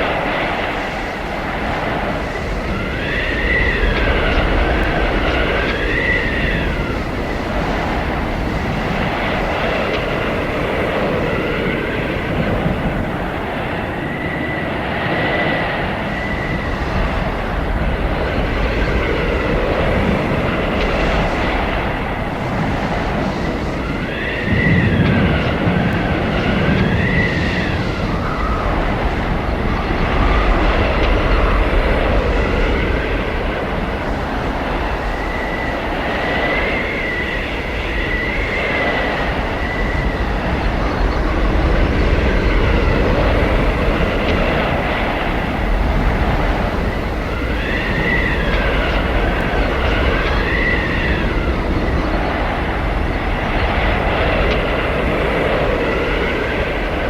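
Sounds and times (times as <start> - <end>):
gusting wind roar: 0.0 - 57.0
high whistling wind howls: 0.0 - 57.0.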